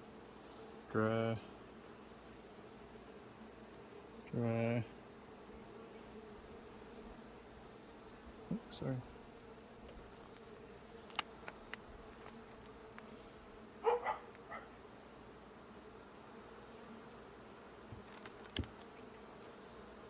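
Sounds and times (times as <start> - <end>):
honey bees buzzing: 0.0 - 20.0
sharp clicks and knocks: 17.9 - 18.9.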